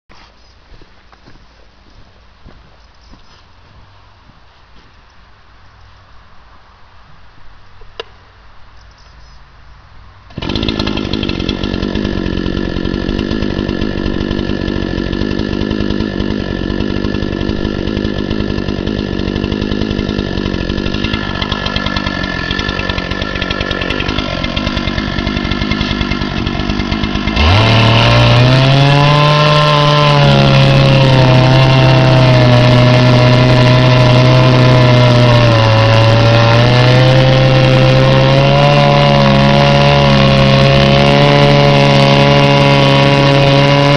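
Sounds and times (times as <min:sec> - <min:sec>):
chainsaw cutting wood: 0:10.3 - 0:43.9.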